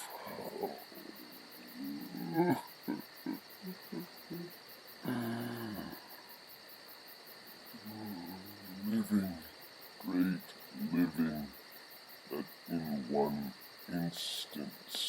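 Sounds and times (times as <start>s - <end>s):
man groaning: 1.7s - 6.0s
man sobbing: 1.9s - 6.0s.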